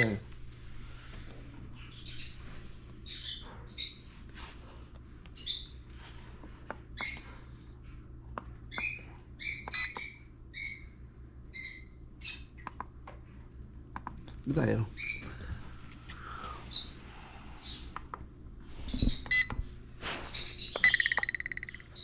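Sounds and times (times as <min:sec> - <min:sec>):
bird chirping and squawking: 0:01.8 - 0:02.4, 0:03.0 - 0:04.0, 0:05.4 - 0:05.8, 0:08.7 - 0:12.5, 0:15.0 - 0:15.3, 0:16.6 - 0:17.0, 0:17.6 - 0:17.9, 0:20.3 - 0:22.0.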